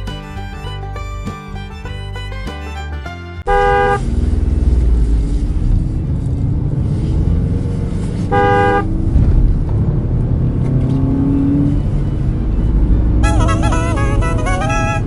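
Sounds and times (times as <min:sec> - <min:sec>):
low engine rumble: 0:00.0 - 0:15.0
vehicle horn toot: 0:03.5 - 0:04.2, 0:08.3 - 0:08.9, 0:13.1 - 0:15.0.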